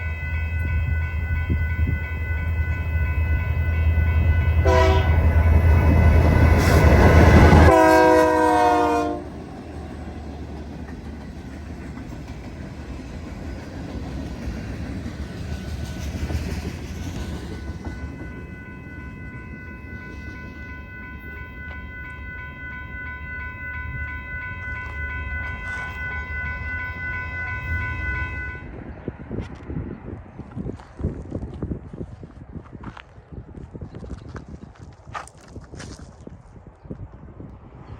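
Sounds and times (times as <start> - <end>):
high-pitched ringing tones: 0.0 - 7.7, 17.1 - 28.8
locomotive air horn chord: 0.0 - 9.4, 20.8 - 28.8
train cars rumbling past: 0.0 - 31.5.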